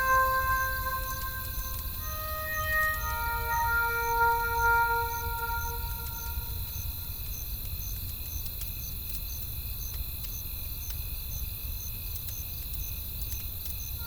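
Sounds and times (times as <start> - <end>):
high insect hum: 0.0 - 10.5
crickets chirping: 0.0 - 14.0.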